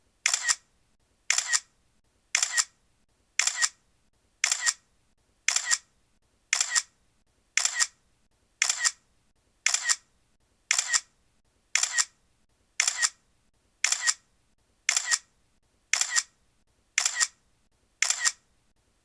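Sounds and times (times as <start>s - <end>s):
camera shutter double clicks: 0.2s - 0.6s, 1.3s - 1.7s, 2.4s - 2.7s, 3.4s - 3.8s, 4.4s - 4.8s, 5.5s - 5.9s, 6.5s - 6.9s, 7.6s - 8.0s, 8.6s - 9.0s, 9.7s - 10.0s, 10.7s - 11.1s, 11.8s - 12.1s, 12.8s - 13.2s, 13.8s - 14.2s, 14.9s - 15.3s, 15.9s - 16.3s, 17.0s - 17.4s, 18.0s - 18.4s.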